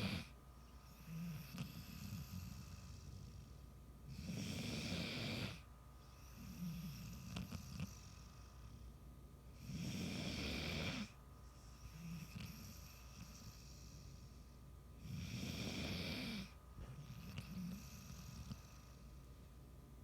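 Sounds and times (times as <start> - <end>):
loud rasping snores: 0.0 - 0.3, 1.0 - 3.2, 4.1 - 5.6, 9.6 - 11.1, 15.0 - 18.9.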